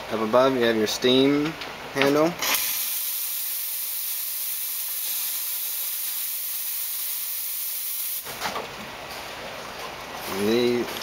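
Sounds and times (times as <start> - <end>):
espresso machine steam hissing: 2.6 - 8.2.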